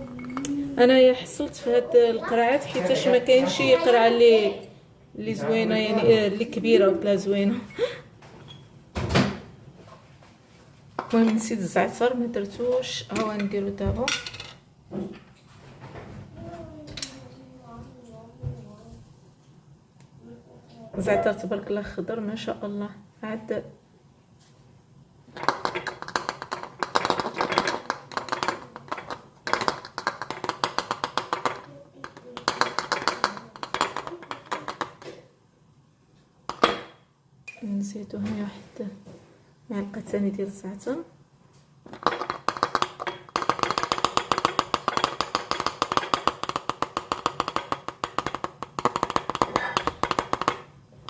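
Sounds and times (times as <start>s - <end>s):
spoon tapping glass bottle: 25.4s - 35.0s, 42.0s - 50.7s.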